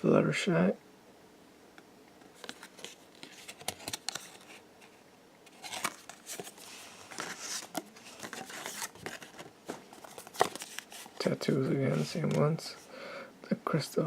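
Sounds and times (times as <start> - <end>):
crinkly packaging rustling: 2.3 - 12.8
card packaging clicks and snaps: 2.4 - 4.5.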